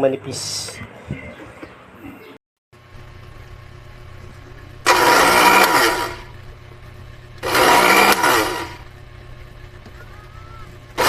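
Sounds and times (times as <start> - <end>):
electric blender motor: 4.7 - 6.4, 7.4 - 9.0.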